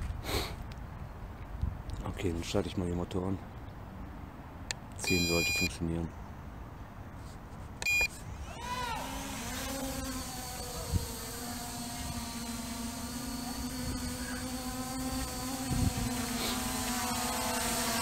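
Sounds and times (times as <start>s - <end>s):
short electronic beep: 5.1s - 5.7s, 7.8s - 8.1s
drone motors whining: 7.8s - 18.0s.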